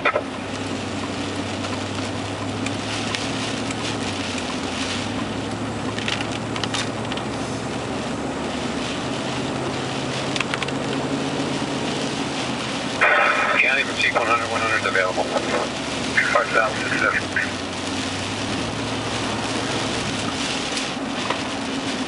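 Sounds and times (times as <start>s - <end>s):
vehicle engine hum: 0.0s - 22.0s
rushing noise: 10.4s - 22.0s.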